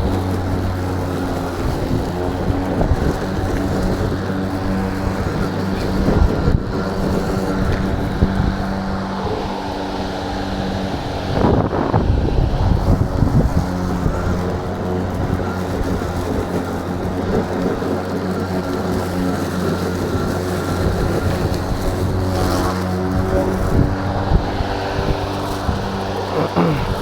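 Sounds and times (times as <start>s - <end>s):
lawn mower running: 0.0s - 27.0s.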